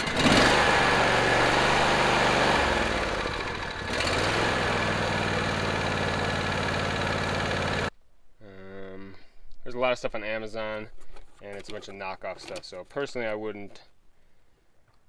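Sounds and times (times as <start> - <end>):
riding mower engine running: 0.0 - 7.9.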